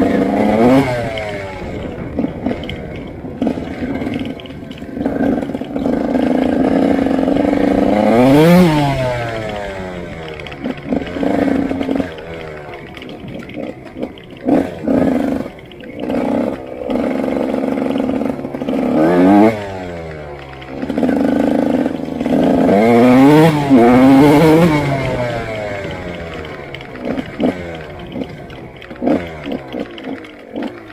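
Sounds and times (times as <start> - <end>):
motorcycle engine revving: 0.0 - 30.9.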